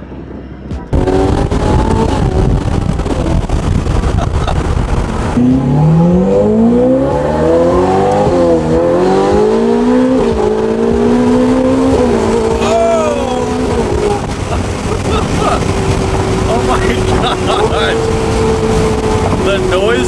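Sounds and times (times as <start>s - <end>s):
sports car engine accelerating: 0.8s - 20.0s.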